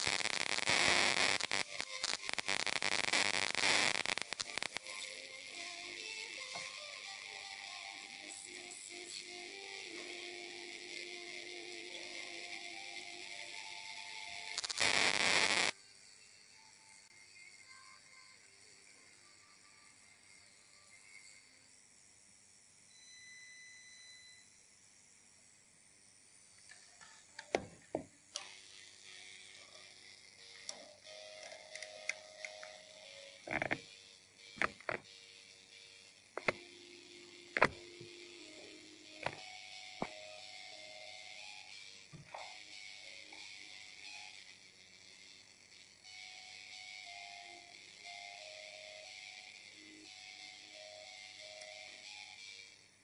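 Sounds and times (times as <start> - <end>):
plasma arc crackling and hissing: 0.0 - 22.8, 24.8 - 53.0
steady high hiss: 0.0 - 53.0
faint music through arc: 27.3 - 53.0.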